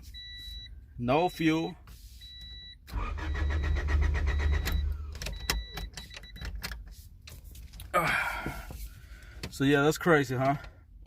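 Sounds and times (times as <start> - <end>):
starter cranking engine: 2.9 - 5.3.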